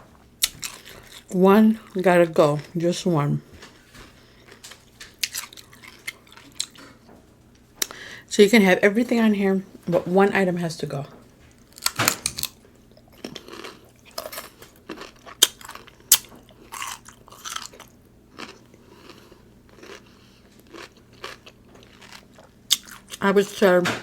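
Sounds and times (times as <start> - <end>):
chewing and crunching: 0.4 - 2.0, 3.5 - 7.1, 11.5 - 23.2
crab shell cracking: 11.6 - 12.6.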